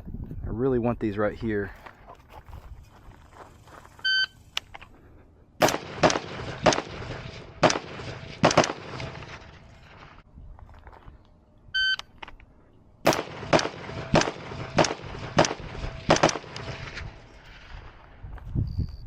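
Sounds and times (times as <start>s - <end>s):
shot timer beep: 4.0s - 4.4s
rifle shots: 5.6s - 10.2s, 13.0s - 18.0s.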